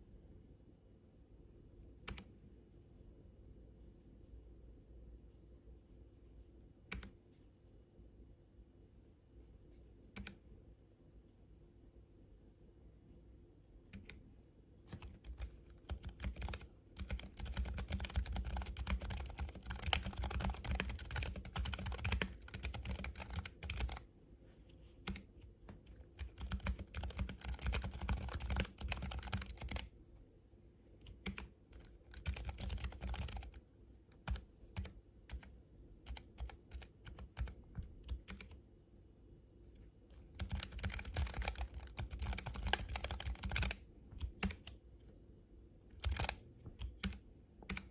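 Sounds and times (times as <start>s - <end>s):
mechanical keyboard typing: 2.1s - 2.3s, 6.9s - 7.2s, 10.1s - 10.4s, 14.9s - 24.1s, 25.0s - 29.9s, 31.0s - 38.6s, 40.1s - 44.8s, 45.9s - 47.9s.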